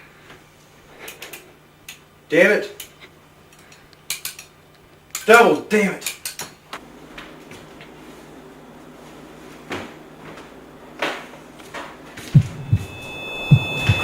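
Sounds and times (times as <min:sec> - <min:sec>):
low thumps: 0:12.2 - 0:14.0.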